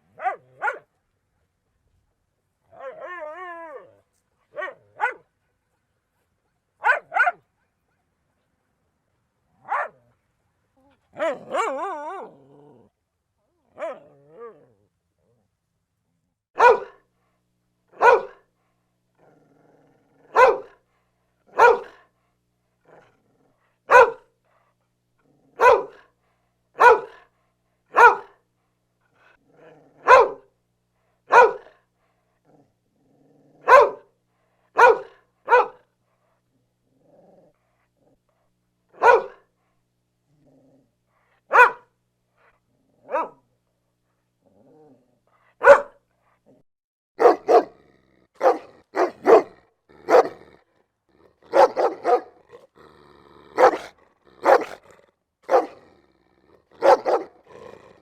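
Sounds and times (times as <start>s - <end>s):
dog barking: 0.1s - 0.9s, 4.5s - 5.3s, 6.8s - 7.5s, 9.6s - 10.1s, 11.2s - 11.8s, 16.6s - 17.0s, 18.0s - 18.4s, 20.3s - 20.8s, 21.5s - 22.0s, 23.9s - 24.3s, 25.6s - 26.1s, 26.8s - 27.3s, 27.9s - 28.4s, 30.0s - 30.5s, 31.3s - 31.8s, 33.6s - 34.1s, 34.8s - 35.8s, 39.0s - 39.5s, 41.5s - 41.9s, 43.0s - 43.4s, 45.6s - 46.0s, 47.2s - 47.8s, 48.4s - 50.5s, 51.5s - 52.5s, 53.6s - 55.8s, 56.8s - 57.5s.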